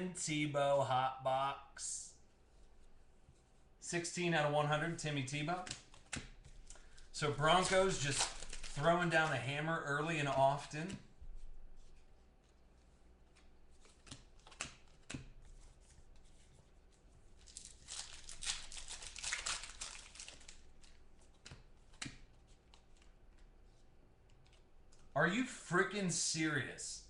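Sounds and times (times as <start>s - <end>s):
wrapper tearing and crinkling: 7.4s - 9.3s, 17.4s - 21.0s
cards clicking: 13.3s - 15.3s.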